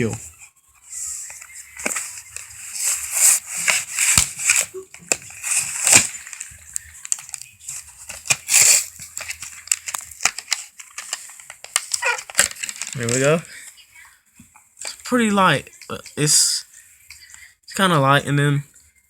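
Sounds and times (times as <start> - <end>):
packaging rustling and crackling: 0.8 - 13.6.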